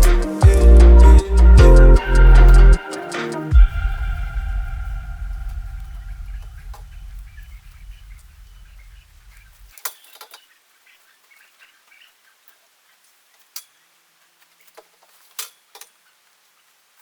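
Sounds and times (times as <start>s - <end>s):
low rumble: 0.0s - 2.8s, 3.5s - 9.6s.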